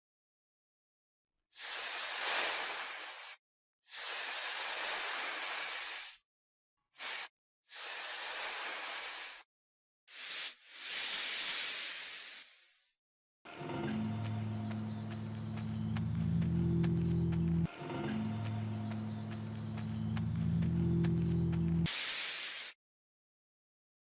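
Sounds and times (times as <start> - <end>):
hissing bursts: 1.6 - 6.2, 7.0 - 9.4, 10.1 - 12.9, 21.8 - 22.8.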